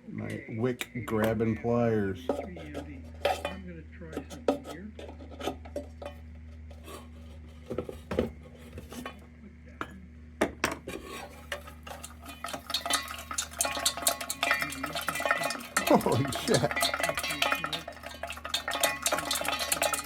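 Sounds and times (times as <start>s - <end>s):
steady low hum: 0.0s - 20.0s
metal pliers scraping in tin: 10.9s - 20.0s
rapid metallic rattle: 11.2s - 20.0s.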